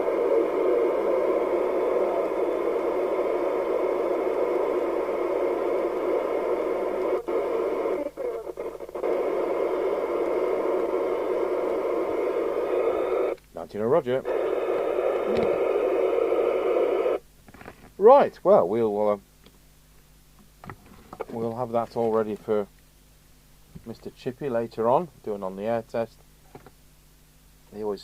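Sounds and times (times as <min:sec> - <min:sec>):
radio receiver hiss: 0:00.0 - 0:19.2, 0:20.4 - 0:23.0.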